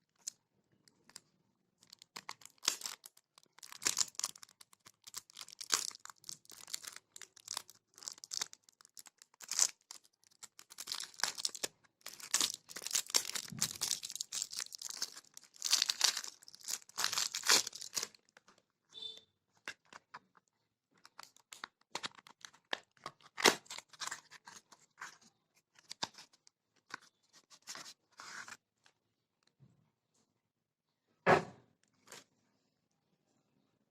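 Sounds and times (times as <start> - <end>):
packaging tearing and crinkling: 1.8 - 18.4, 21.0 - 25.1.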